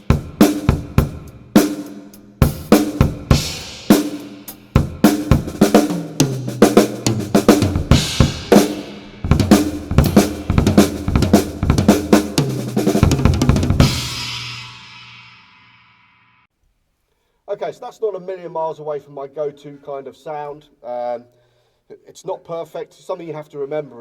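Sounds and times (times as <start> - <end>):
drum kit groove: 0.0 - 15.8
cymbal crash ringing: 7.8 - 11.0, 13.8 - 16.5.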